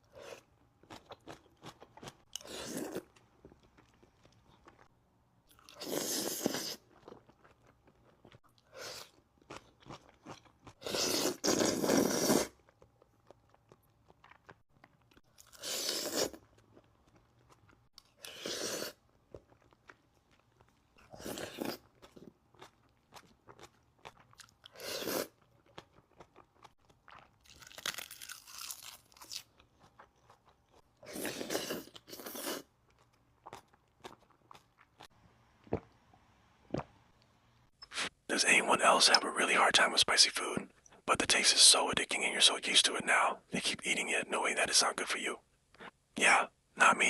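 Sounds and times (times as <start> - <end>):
quiet chewing: 12.6 - 35.9
loud crunching bites: 27.4 - 29.5.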